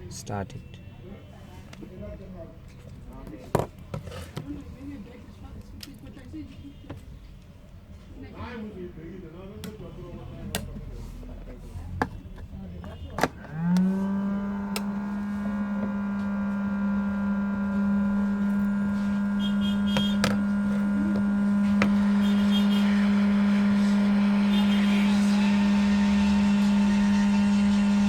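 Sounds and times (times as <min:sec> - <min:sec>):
small electric motor humming: 0:13.3 - 0:28.0.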